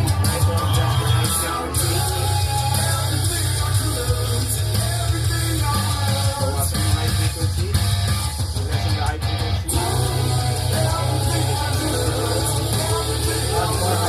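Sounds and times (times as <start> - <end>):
song with singing and bass: 0.0 - 14.0.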